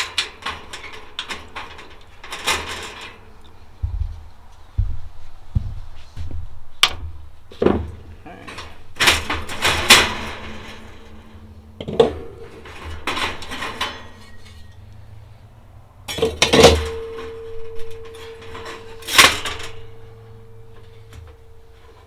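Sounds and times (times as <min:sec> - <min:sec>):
sheet metal clanking: 0:00.0 - 0:22.0
metallic ringing tone: 0:13.4 - 0:15.7, 0:16.5 - 0:22.0.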